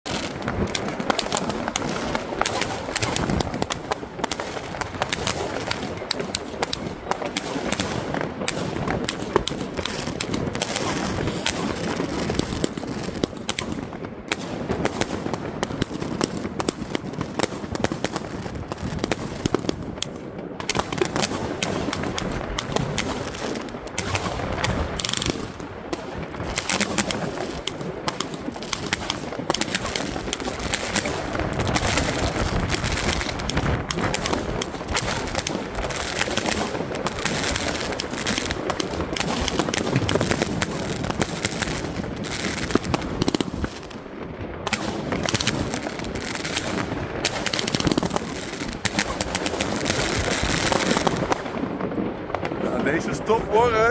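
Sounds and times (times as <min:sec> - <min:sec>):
firework cake launches and bangs: 0:00.1 - 0:18.3.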